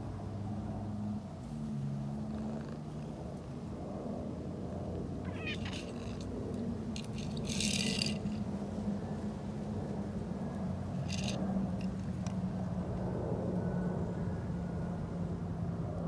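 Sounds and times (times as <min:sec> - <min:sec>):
cat meowing: 0:05.2 - 0:05.9.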